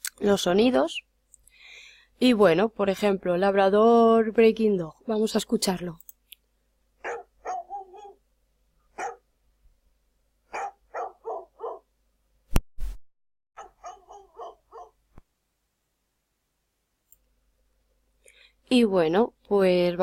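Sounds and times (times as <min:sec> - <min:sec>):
dog barking: 0:07.0 - 0:08.2, 0:08.9 - 0:09.3, 0:10.5 - 0:11.9, 0:13.6 - 0:15.0.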